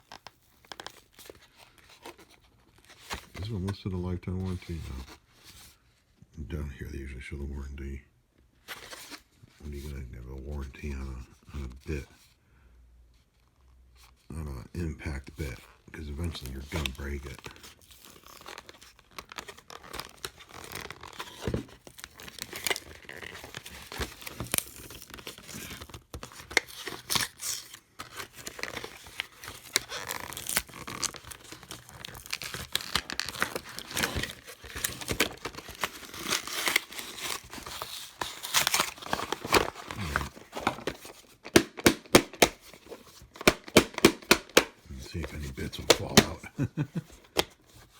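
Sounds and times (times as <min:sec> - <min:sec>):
packaging crinkling and tearing: 0:00.0 - 0:05.6, 0:15.6 - 0:47.9.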